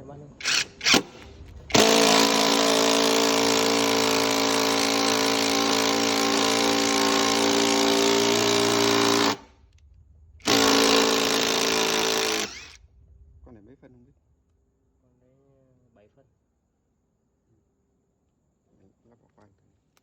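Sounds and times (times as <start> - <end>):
cordless drill running: 0.4 - 9.5, 10.4 - 12.8.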